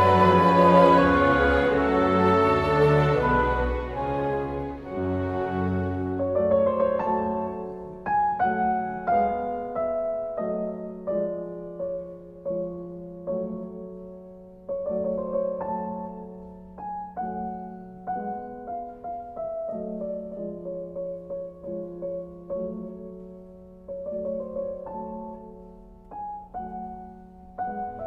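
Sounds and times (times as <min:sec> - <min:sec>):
slow gentle piano music: 0:00.0 - 0:28.0.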